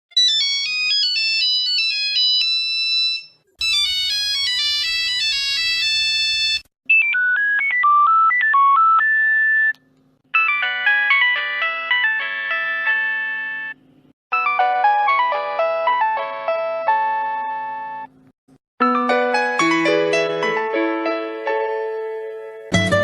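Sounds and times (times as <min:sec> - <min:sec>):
phone ringtone melodies: 0:00.1 - 0:09.7, 0:10.3 - 0:18.1, 0:18.8 - 0:21.2.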